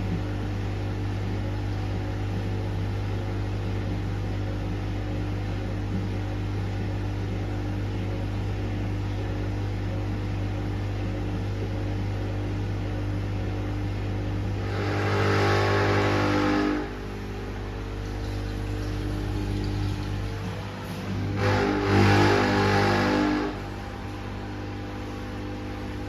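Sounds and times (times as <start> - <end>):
washing machine motor hum: 0.0 - 26.0
washing machine rushing surge: 14.6 - 26.0.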